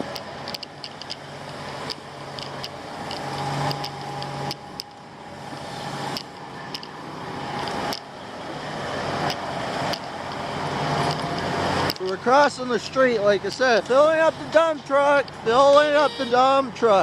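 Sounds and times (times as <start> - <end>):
vehicle engine revving: 0.0 - 16.4
sharp clicks: 0.1 - 5.0.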